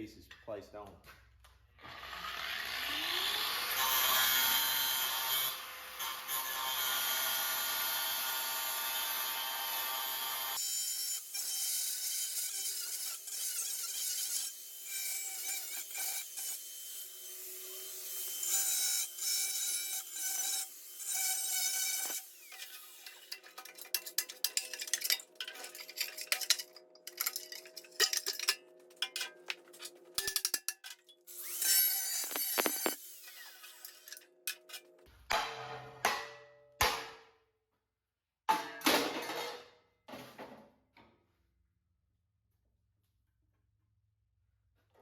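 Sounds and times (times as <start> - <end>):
angle grinder cutting steel: 2.0 - 34.9.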